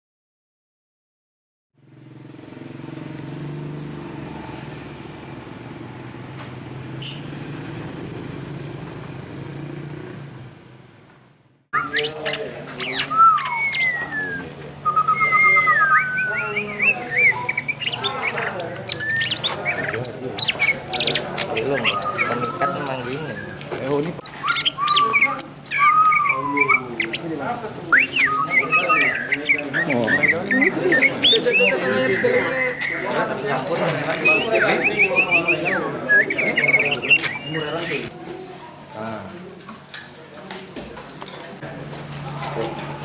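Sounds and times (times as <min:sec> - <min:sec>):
songbirds chirping and whistling: 0:11.8 - 0:38.1.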